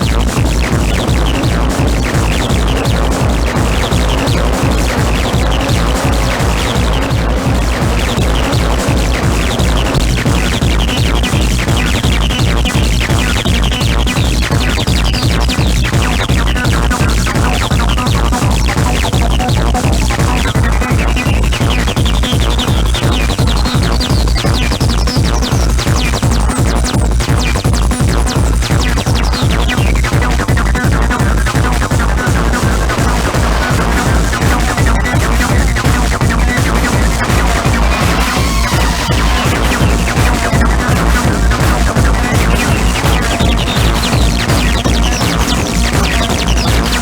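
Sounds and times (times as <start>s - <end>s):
techno dance music: 0.0s - 47.0s.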